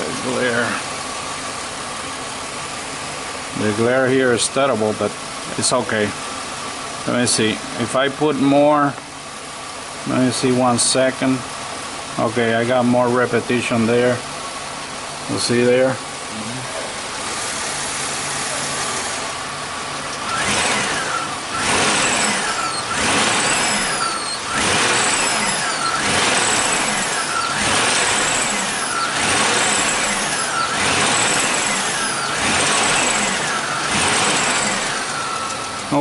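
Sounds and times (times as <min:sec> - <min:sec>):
car engine running: 0:00.0 - 0:10.6, 0:11.3 - 0:36.0
falling whine: 0:20.1 - 0:36.0.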